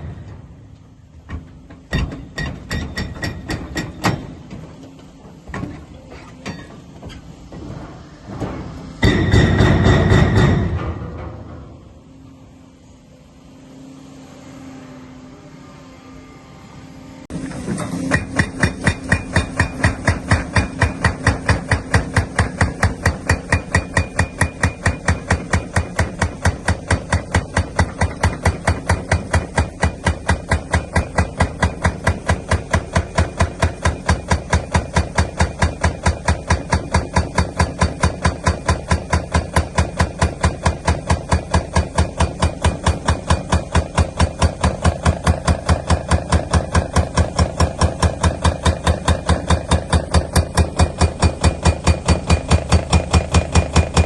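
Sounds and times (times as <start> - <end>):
hydraulic breaker hammering: 0.0 - 12.2, 17.3 - 54.0.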